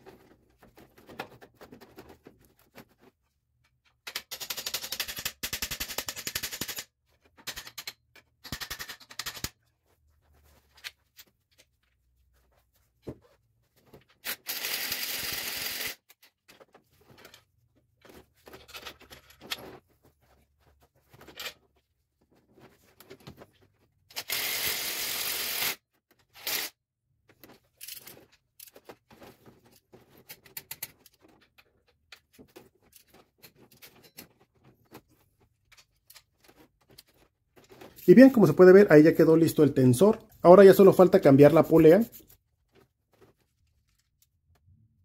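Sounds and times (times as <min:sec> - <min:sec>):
tools clicking and scraping on metal: 0:03.6 - 0:09.6, 0:27.5 - 0:38.1.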